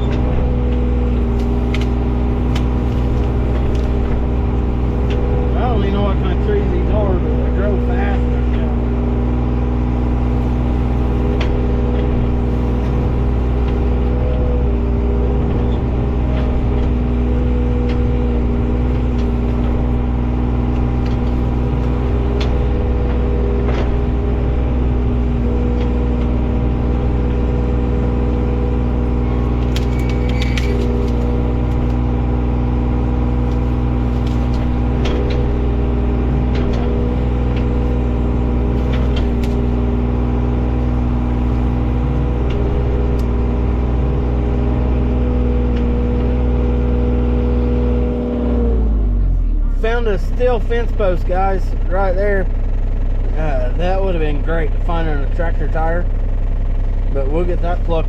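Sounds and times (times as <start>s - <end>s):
diesel engine running: 0.0s - 58.0s
knocks and clatters of debris: 29.4s - 32.1s.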